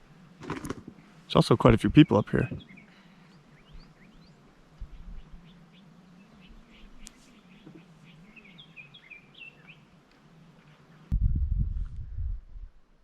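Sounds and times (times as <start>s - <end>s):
small birds chirping: 1.4s - 10.0s.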